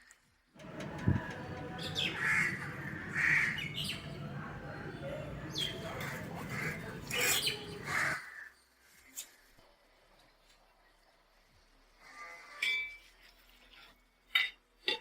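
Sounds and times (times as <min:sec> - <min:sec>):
birds calling: 0:00.6 - 0:08.3.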